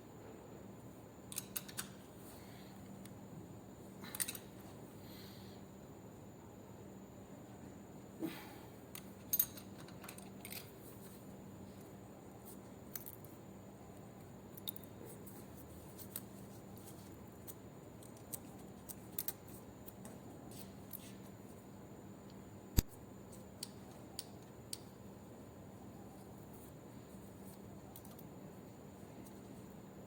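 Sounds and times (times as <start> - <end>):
faint steady hum: 0.0 - 30.0
metallic clicks of hand tools: 1.3 - 2.0, 4.1 - 4.5.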